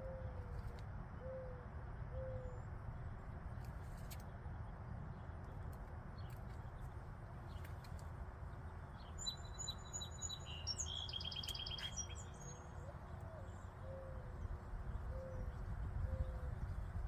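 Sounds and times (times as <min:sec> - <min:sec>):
songbird singing with trill: 0:08.9 - 0:17.0.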